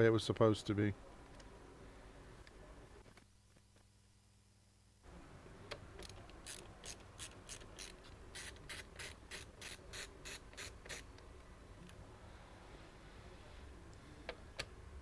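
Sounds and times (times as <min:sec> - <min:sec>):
ratcheting screwdriver clicking: 0:06.0 - 0:11.1.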